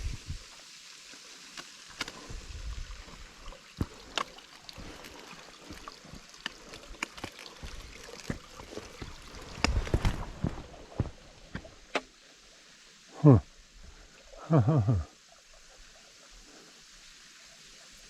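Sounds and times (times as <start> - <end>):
small waterfall hissing: 0.0 - 18.0
footsteps on rock and leaves: 1.6 - 11.8.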